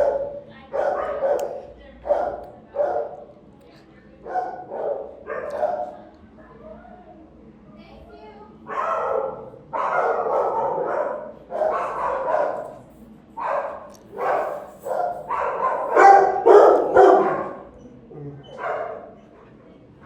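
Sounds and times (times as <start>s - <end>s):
dogs barking: 0.0s - 3.3s, 4.2s - 6.1s, 8.7s - 17.8s, 18.4s - 19.3s.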